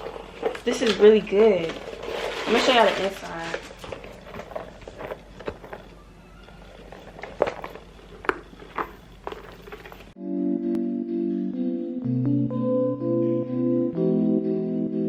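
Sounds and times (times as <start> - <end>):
handbag handling clicks and knocks: 0.0 - 10.2
low room hum: 0.0 - 10.2
music with keyboard chords: 10.2 - 15.0.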